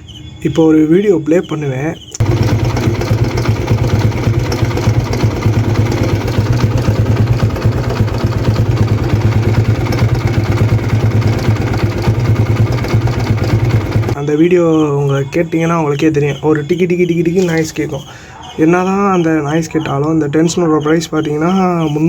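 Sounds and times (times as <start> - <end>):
fast steady timing chain ticking: 2.2 - 17.4
motorcycle engine idling: 2.2 - 22.0.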